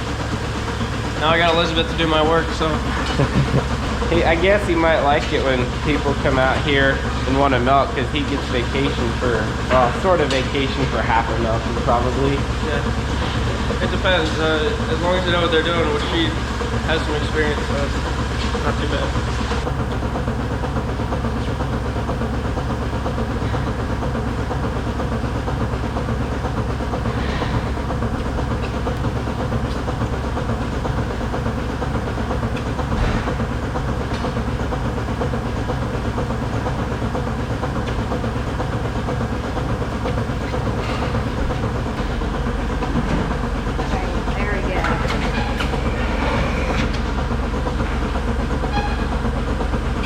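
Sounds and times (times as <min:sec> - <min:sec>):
milking machine hum: 0:00.0 - 0:50.0.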